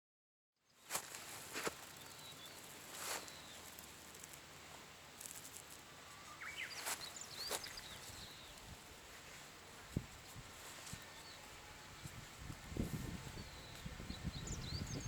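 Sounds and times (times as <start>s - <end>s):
steady outdoor hiss: 0.6s - 15.0s
faint bird chirps: 6.0s - 8.6s.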